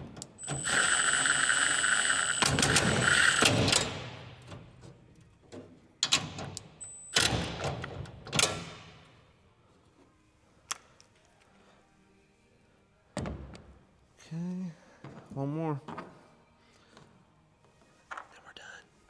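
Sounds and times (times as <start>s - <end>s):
power tool driving a bolt: 0.2s - 4.5s, 6.8s - 7.6s.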